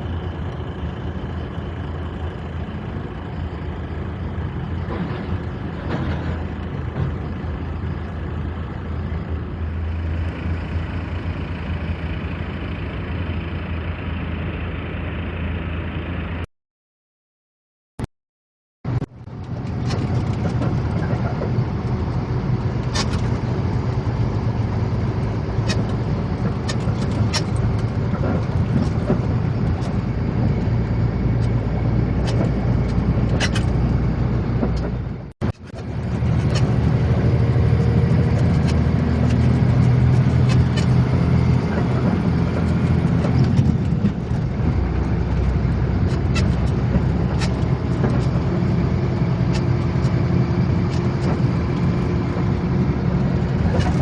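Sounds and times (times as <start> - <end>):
heavy truck engine running: 0.0 - 16.5, 18.9 - 54.0
road noise: 0.0 - 16.5, 18.9 - 54.0
sharp clicks and rattles: 18.9 - 54.0.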